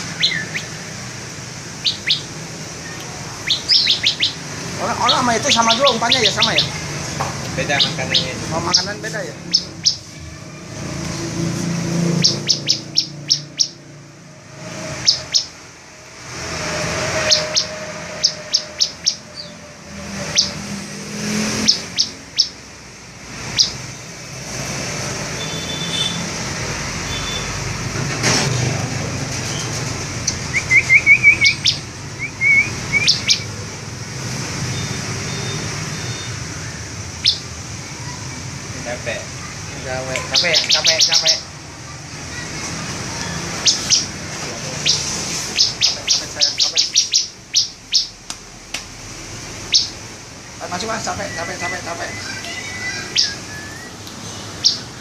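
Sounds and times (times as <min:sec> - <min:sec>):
bird chirping: 0:00.0 - 0:14.0, 0:14.6 - 0:15.6, 0:16.9 - 0:22.6, 0:23.4 - 0:24.2, 0:25.4 - 0:26.3, 0:27.1 - 0:27.6, 0:29.5 - 0:38.5, 0:40.1 - 0:41.5, 0:43.0 - 0:48.2, 0:49.6 - 0:55.0
bird trilling: 0:00.0 - 0:15.6, 0:16.5 - 0:22.7, 0:23.4 - 0:24.1, 0:25.4 - 0:26.3, 0:27.1 - 0:27.6, 0:29.5 - 0:33.7, 0:34.6 - 0:38.4, 0:39.4 - 0:41.6, 0:42.3 - 0:48.2, 0:49.6 - 0:55.0.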